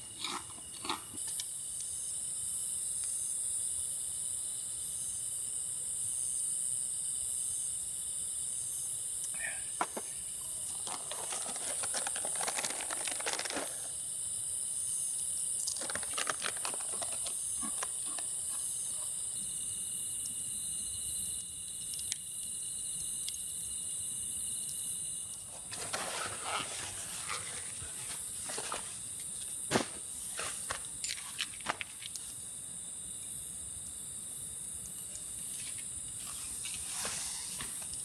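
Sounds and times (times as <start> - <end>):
high-pitched insect chorus: 0.0 - 38.0
rustling handling noise: 9.8 - 13.9, 15.8 - 18.3, 25.4 - 32.1.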